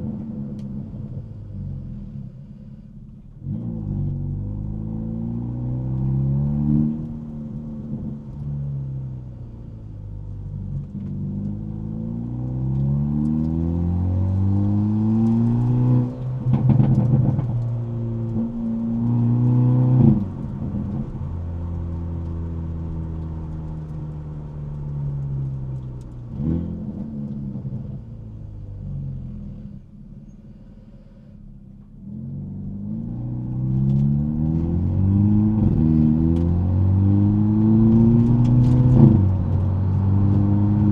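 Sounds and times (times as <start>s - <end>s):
muffled car exhaust revving: 0.0s - 40.9s
exhaust pops and bangs: 16.4s - 17.8s.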